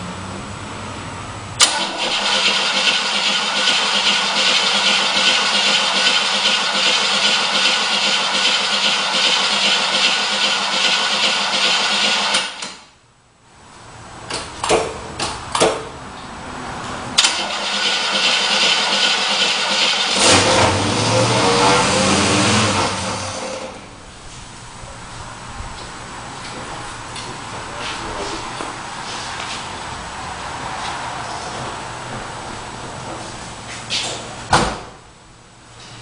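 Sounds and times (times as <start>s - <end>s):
car engine starting: 0.0s - 12.7s, 16.5s - 25.4s.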